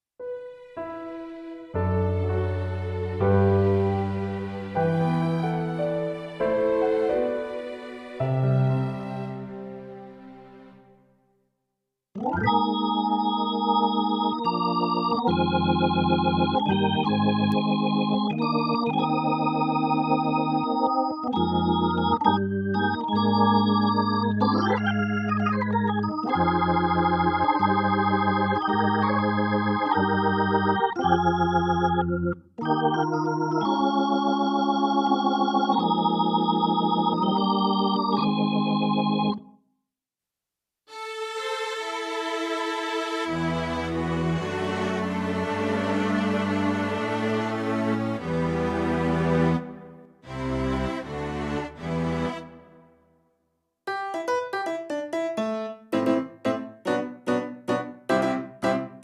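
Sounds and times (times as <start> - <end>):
electronic organ chords: 0.2 - 10.8, 12.2 - 39.5, 53.9 - 59.0.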